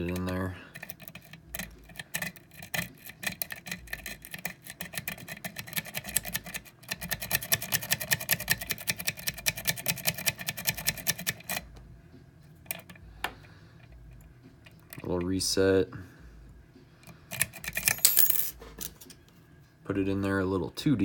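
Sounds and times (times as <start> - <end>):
lock pick raking pins clicking: 0.0 - 11.7, 12.6 - 15.1, 17.0 - 19.2.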